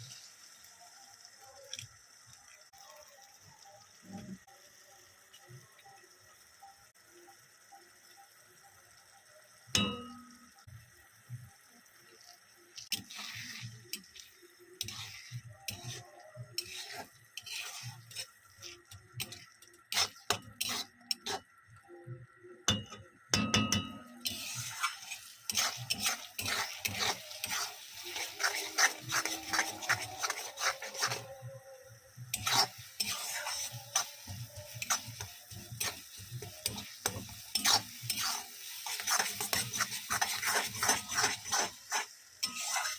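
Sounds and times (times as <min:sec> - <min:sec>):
food sizzling in hot oil: 0:00.0 - 0:42.9
metal utensil scraping frying pan: 0:12.8 - 0:21.5, 0:22.8 - 0:31.4, 0:32.2 - 0:42.9
utensil clanging on pan: 0:22.7 - 0:24.2.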